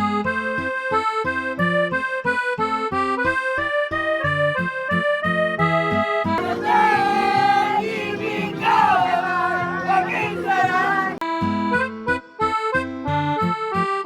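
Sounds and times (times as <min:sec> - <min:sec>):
accordion tune: 0:06.4 - 0:11.2
person singing: 0:06.4 - 0:11.2.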